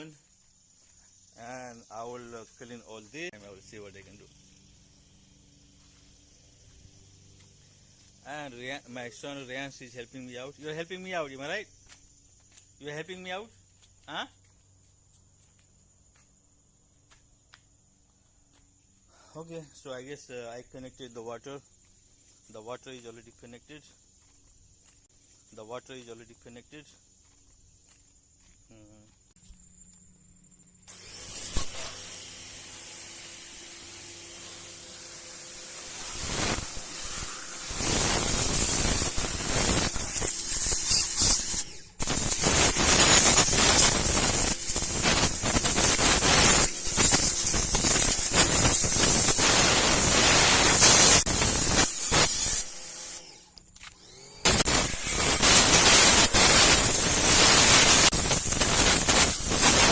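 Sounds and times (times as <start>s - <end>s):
pressure washer spray hiss: 30.9s - 53.3s, 54.4s - 59.9s.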